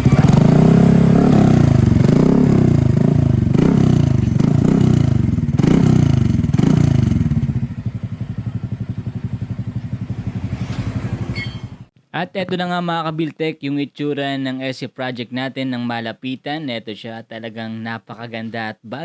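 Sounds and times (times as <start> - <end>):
scooter engine revving and idling: 0.0 - 11.9.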